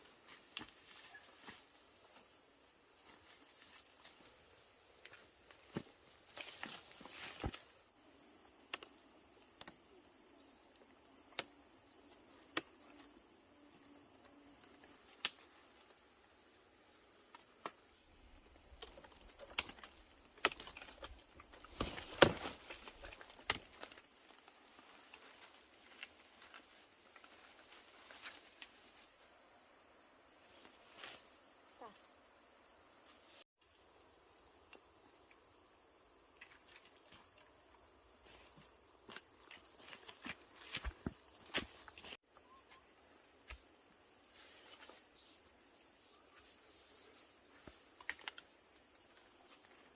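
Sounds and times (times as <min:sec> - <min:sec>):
insects droning: 0:00.0 - 0:49.9.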